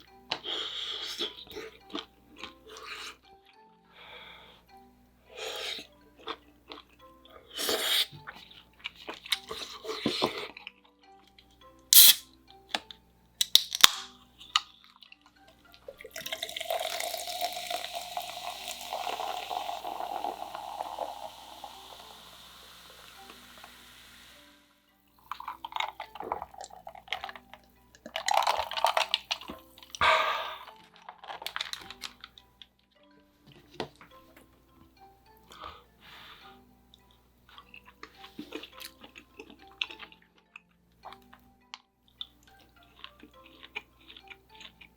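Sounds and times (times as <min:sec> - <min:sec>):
soft background music: 0:00.0 - 0:44.9
eating crunches and clicks: 0:07.6 - 0:12.2, 0:12.8 - 0:15.4, 0:25.4 - 0:30.0, 0:30.7 - 0:32.5, 0:37.5 - 0:44.9.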